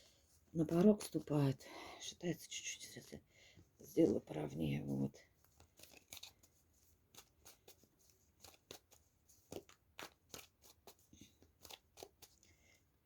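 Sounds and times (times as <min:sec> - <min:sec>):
cards rustling and clicking: 0:00.1 - 0:01.3, 0:05.3 - 0:12.6.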